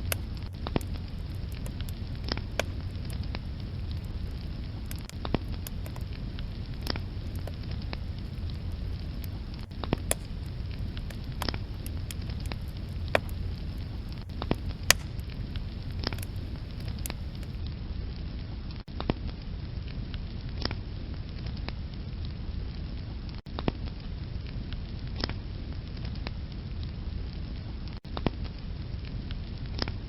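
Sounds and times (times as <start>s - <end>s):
low rumble of flames: 0.0s - 17.6s
wood fire crackling and popping: 0.0s - 17.6s.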